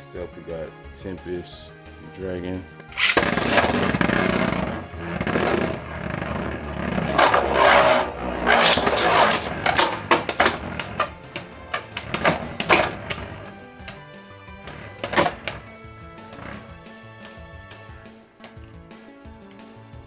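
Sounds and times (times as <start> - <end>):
spinning tops clashing clacks: 2.9 - 4.6
spinning tops grinding on plastic: 2.9 - 14.0, 14.6 - 17.5.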